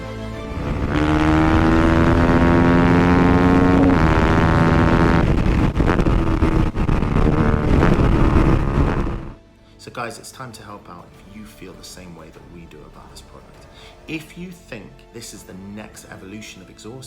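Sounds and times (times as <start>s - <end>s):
simulated motorcycle engine sound: 0.6s - 9.4s.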